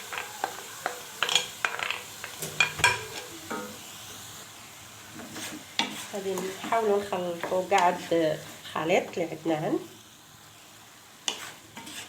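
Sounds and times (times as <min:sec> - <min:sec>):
spoon scraping a pan: 0:00.0 - 0:03.8, 0:05.2 - 0:08.2, 0:11.2 - 0:12.0
food sizzling in a pan: 0:00.0 - 0:12.0.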